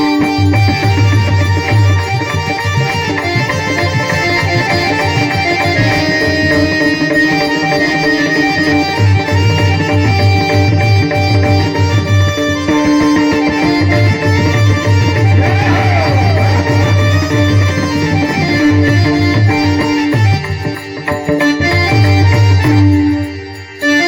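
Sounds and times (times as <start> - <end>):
held melodic notes: 0.0 - 22.9.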